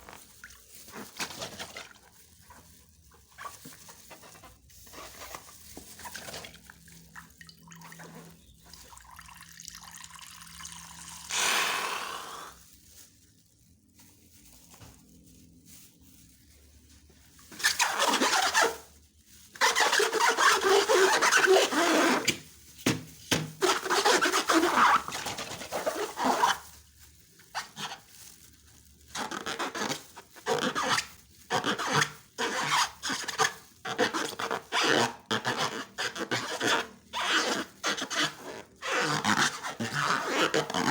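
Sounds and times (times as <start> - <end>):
slime squelching: 0.0 - 9.0.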